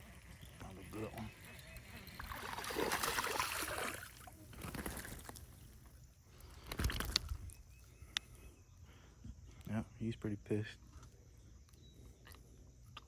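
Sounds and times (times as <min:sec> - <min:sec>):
fish splashing in water: 0:01.9 - 0:05.3.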